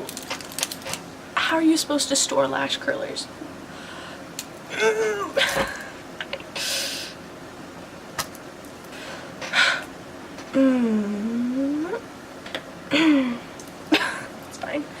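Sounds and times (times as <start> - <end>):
woman whining hum: 3.4 - 7.2, 9.0 - 12.1, 12.9 - 14.4.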